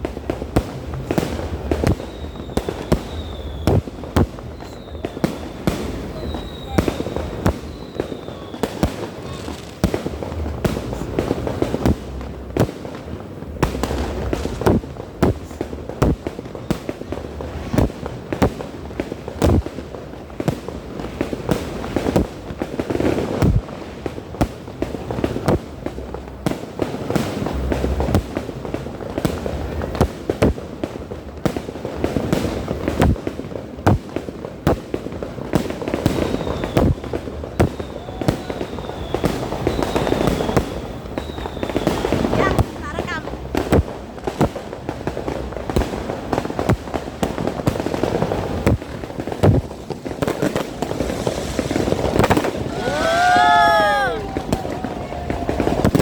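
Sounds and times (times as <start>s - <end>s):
fireworks bangs: 0.0s - 56.0s
fireworks crackling: 0.0s - 56.0s
falling firework whistles: 1.2s - 9.9s, 35.9s - 42.9s, 49.4s - 56.0s.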